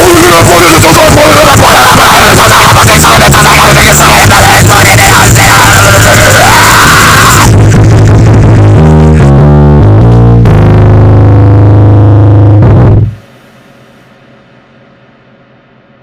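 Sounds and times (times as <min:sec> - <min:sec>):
distorted noise rock guitar: 0:00.0 - 0:15.0
faint hum: 0:11.0 - 0:16.0.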